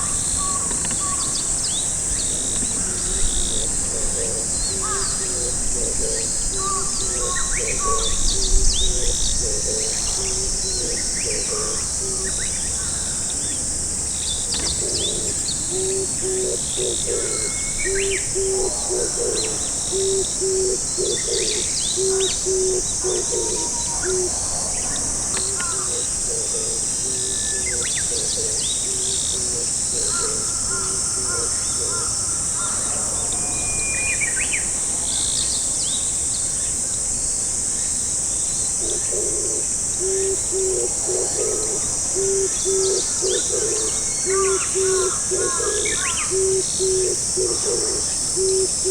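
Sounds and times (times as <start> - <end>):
high insect drone: 0.0 - 48.9
small songbirds chirping: 0.0 - 48.9
dove cooing: 2.5 - 12.5, 14.5 - 32.9, 38.8 - 48.9.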